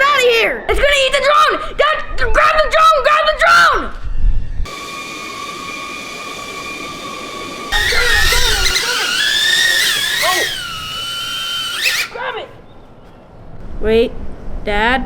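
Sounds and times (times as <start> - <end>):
drone propellers whining: 4.7 - 12.3.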